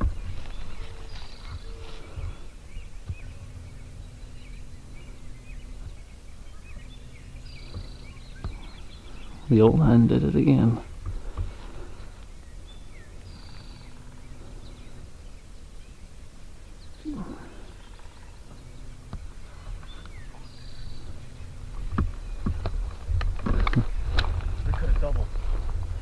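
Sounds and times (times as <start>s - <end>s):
sharp knocks and rustles: 0.0s - 3.4s, 10.9s - 12.3s, 21.7s - 26.0s
songbird singing: 0.0s - 26.0s.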